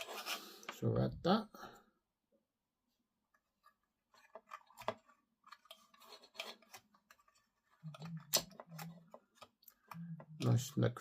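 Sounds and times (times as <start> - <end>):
plastic parts clicking and scraping: 3.3 - 11.0.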